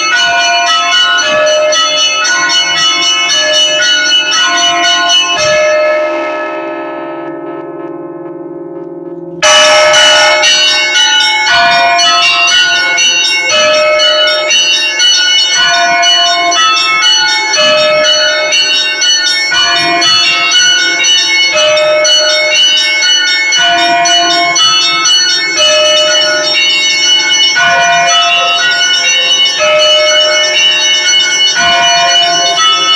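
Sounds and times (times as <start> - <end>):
deep bell stroke: 0.0 - 22.9
big bell hum: 0.0 - 32.9
small bells ringing fast: 0.0 - 32.9.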